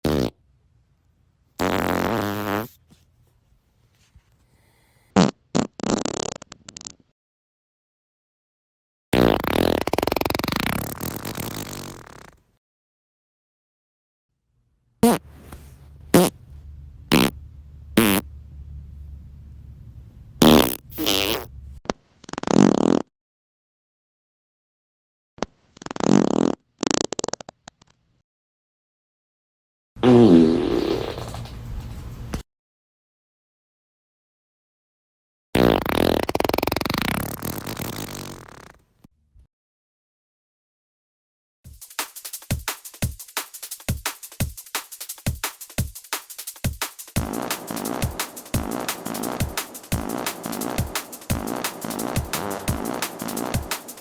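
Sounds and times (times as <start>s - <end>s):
farting: 0.0s - 0.4s, 1.6s - 2.8s, 5.2s - 7.1s, 9.2s - 12.4s, 15.0s - 15.2s, 16.1s - 16.4s, 17.1s - 17.4s, 18.0s - 18.2s, 20.4s - 23.1s, 25.4s - 28.0s, 30.0s - 31.5s, 35.6s - 38.8s, 47.2s - 54.0s
low hum: 15.8s - 20.4s, 21.5s - 21.8s.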